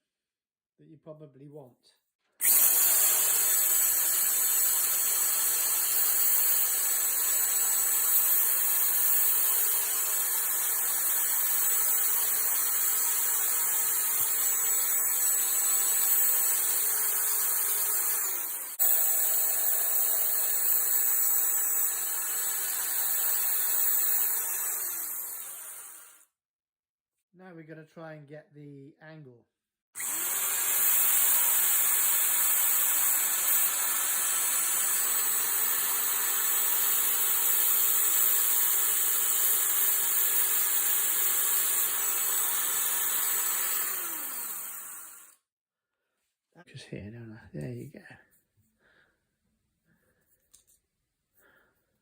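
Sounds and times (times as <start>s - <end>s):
belt grinder grinding steel: 2.4s - 26.3s, 30.0s - 45.4s.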